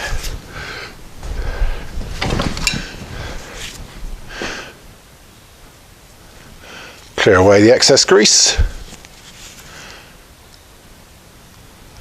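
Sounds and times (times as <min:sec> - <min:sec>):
tools clunking and scraping: 0:02.2 - 0:03.0.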